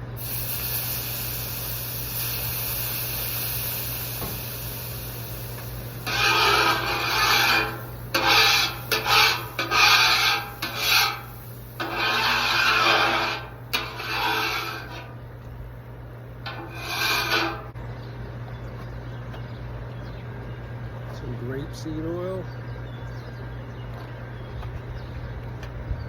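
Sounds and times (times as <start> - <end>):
metal scraper scraping griddle: 5.9 - 15.2, 16.4 - 17.8.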